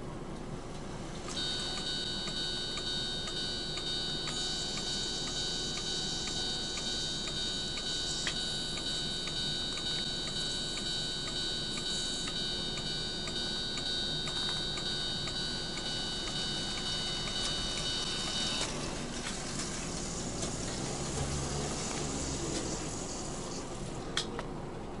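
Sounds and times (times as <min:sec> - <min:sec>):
crossing signal bell ringing: 0:01.4 - 0:18.7.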